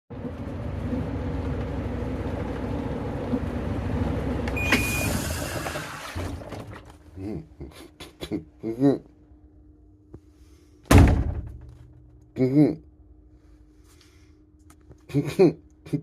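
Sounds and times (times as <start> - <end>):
washing machine humming and whirring: 0.1 - 16.0
short beep: 4.6 - 5.3.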